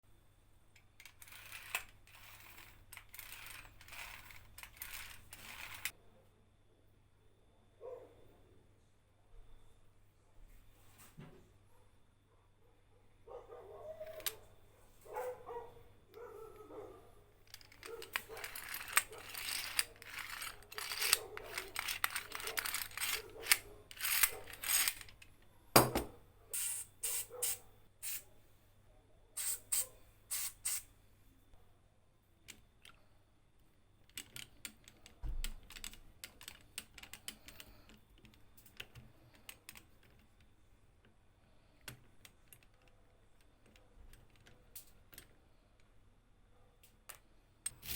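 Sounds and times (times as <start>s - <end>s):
metal drill parts clicking: 1.0s - 5.9s, 17.5s - 25.3s, 26.6s - 28.2s.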